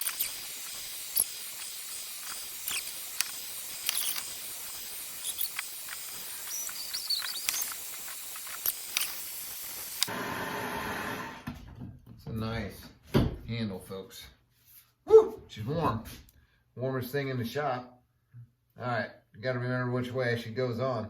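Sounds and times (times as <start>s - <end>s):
wood crackling and popping: 0.0s - 10.1s
torch flame hissing: 0.0s - 11.4s.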